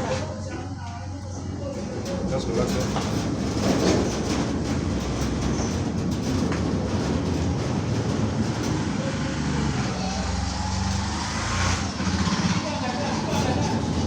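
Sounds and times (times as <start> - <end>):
continuous hum: 0.0 - 14.0
low machine rumble: 0.0 - 14.0.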